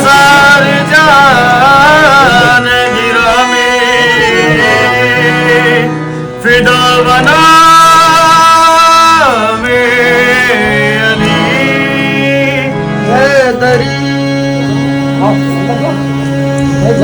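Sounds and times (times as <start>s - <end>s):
instrumental accompaniment: 0.0s - 17.0s
person singing wavering notes: 0.0s - 17.0s.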